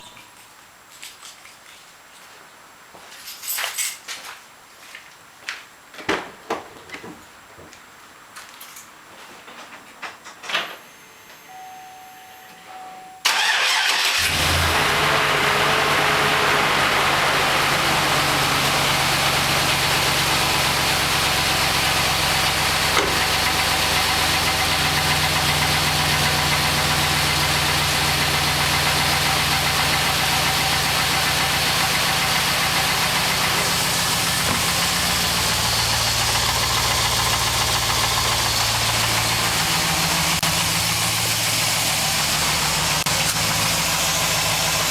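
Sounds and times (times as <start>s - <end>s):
car engine cranking and idling: 13.2s - 44.9s.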